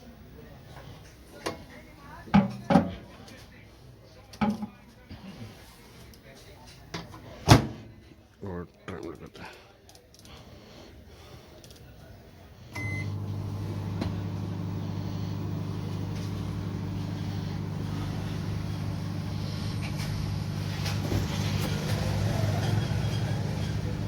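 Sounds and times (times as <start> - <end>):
microwave hum and fan: 12.6 - 24.0
microwave keypad beep: 12.8 - 13.2.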